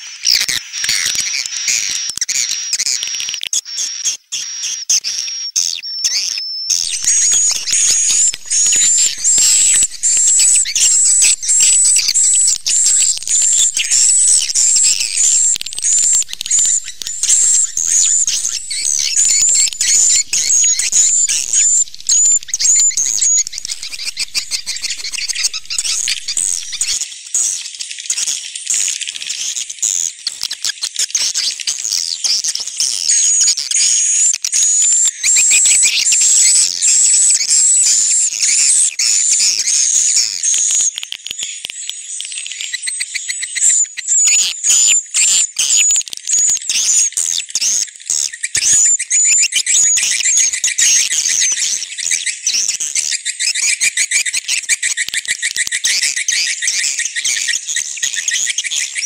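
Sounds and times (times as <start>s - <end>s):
short whistled notes: 6.8s - 27.0s
swiftlet chirps and twittering: 6.8s - 27.0s.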